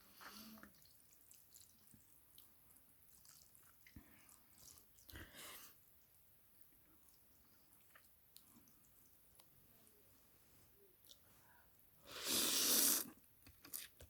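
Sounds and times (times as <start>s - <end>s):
wet chewing sounds: 0.6s - 5.2s, 6.8s - 8.9s.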